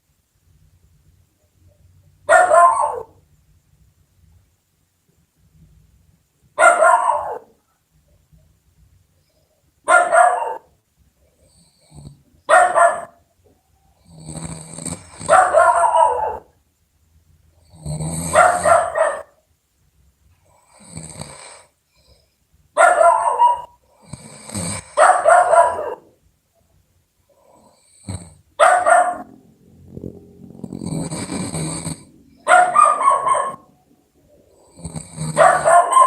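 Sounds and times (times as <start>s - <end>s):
loud snoring: 11.5s - 12.2s, 14.0s - 15.3s, 17.6s - 18.6s, 20.6s - 21.7s, 24.0s - 25.0s, 27.5s - 28.5s, 29.1s - 32.9s, 34.5s - 35.9s.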